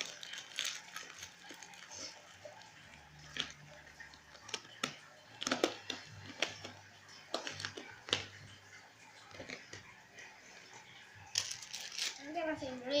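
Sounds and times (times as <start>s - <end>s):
rustling toys and packaging: 0.0s - 8.5s, 11.2s - 12.6s.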